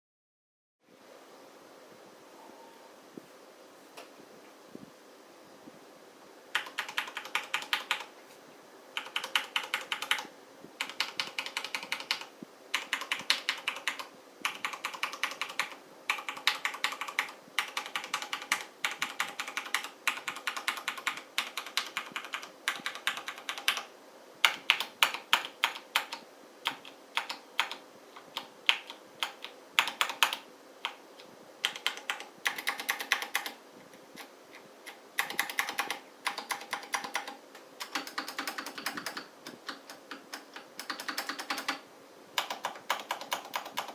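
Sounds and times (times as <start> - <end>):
mechanical keyboard typing: 6.5 - 8.1, 9.0 - 31.0, 31.6 - 33.6, 34.2 - 41.8, 42.4 - 43.9.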